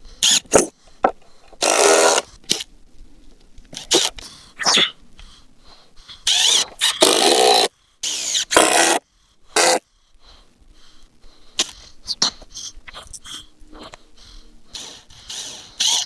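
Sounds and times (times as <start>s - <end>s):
power drill driving screws: 0.2s - 0.7s, 1.6s - 2.3s, 6.3s - 9.0s, 9.6s - 9.8s, 15.8s - 16.0s.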